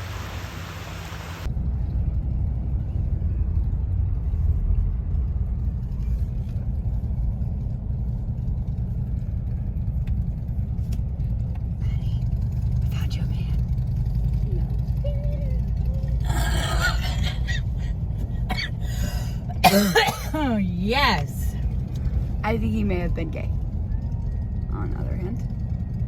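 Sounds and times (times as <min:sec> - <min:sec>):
car cabin rumble: 0:09.9 - 0:24.0.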